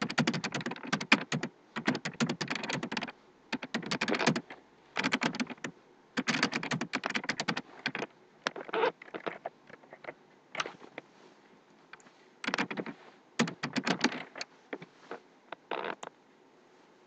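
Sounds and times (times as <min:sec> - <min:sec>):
typing on computer keyboard: 0:00.0 - 0:08.1, 0:12.4 - 0:14.3.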